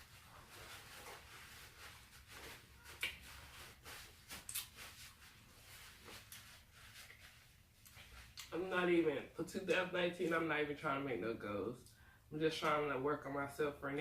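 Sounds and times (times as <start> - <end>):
person chewing with lip smacks: 4.4 - 4.8, 7.8 - 8.5.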